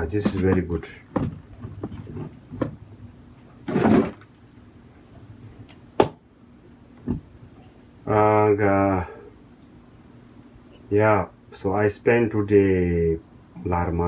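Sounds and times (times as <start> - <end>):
soft knocks: 0.2 - 2.9
equipment scrape: 3.7 - 4.2.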